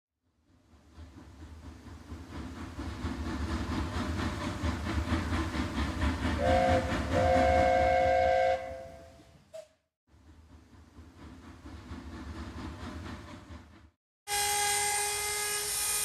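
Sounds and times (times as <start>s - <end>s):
train rumbling: 0.3s - 15.7s
train horn: 6.4s - 9.3s, 14.3s - 16.0s.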